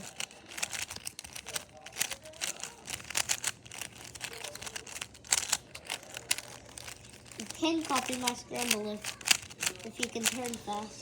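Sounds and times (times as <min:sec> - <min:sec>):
puzzle cube clicking: 0:00.0 - 0:10.8.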